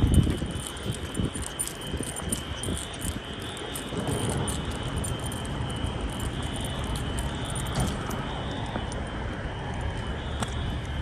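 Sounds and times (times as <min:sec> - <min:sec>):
fire alarm horn high tone: 0:00.0 - 0:11.0
low traffic rumble: 0:00.0 - 0:11.0.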